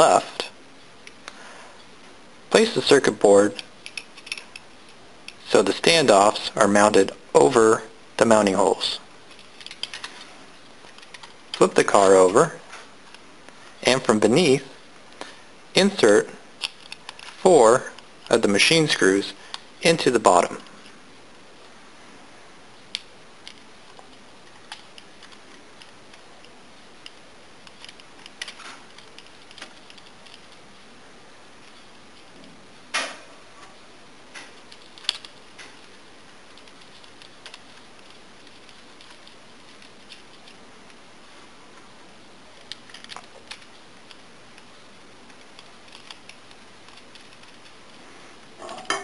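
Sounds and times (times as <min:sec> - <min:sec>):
steady hiss: 0:00.0 - 0:49.0
light clicks of small parts: 0:09.3 - 0:11.6.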